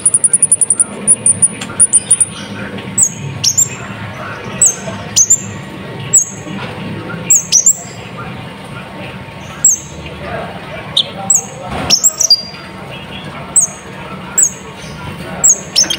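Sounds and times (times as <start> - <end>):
bird high trill: 0.0 - 2.4.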